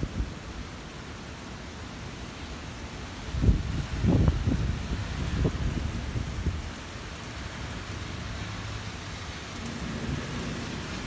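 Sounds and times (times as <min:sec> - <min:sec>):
steady rain falling: 0:00.0 - 0:11.0
low rumble of thunder: 0:09.6 - 0:11.0.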